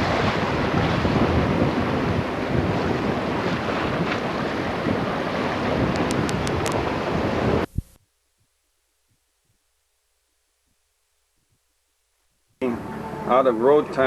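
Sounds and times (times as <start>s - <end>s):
water rushing along hull: 0.0s - 7.7s, 12.6s - 14.0s
wind buffeting microphone: 0.0s - 8.0s.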